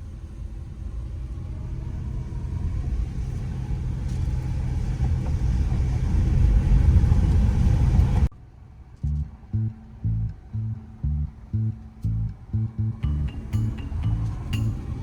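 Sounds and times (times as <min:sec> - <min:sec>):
loud low rumble: 0:09.0 - 0:15.0.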